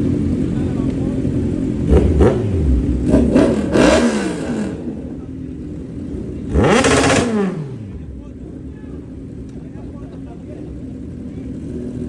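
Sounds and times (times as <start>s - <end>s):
motorcycle engine revving: 0.0s - 9.6s.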